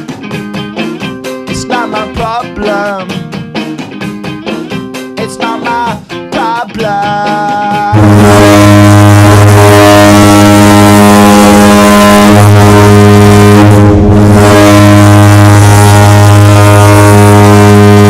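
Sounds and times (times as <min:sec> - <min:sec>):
goal horn blast: 0:07.8 - 0:18.0.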